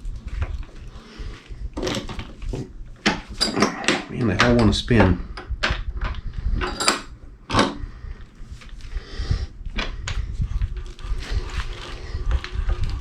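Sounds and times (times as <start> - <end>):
tools clicking and knocking: 3.0 - 7.8.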